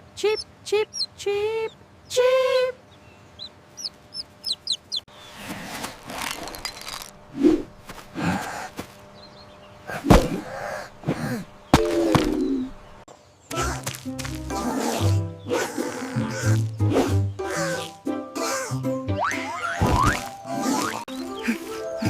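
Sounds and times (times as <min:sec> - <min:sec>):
baby chick peeping: 0:00.2 - 0:05.1.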